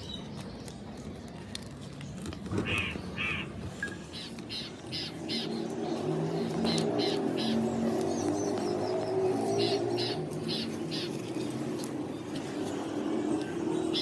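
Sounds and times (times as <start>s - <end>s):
crows cawing: 2.6s - 3.6s.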